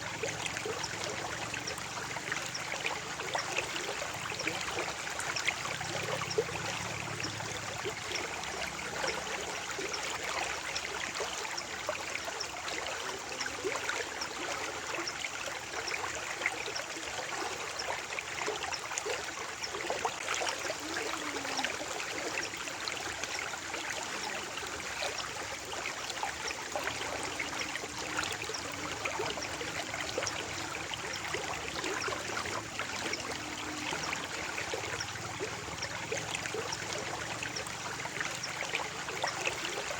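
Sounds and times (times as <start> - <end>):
stream of water flowing: 0.0 - 39.9.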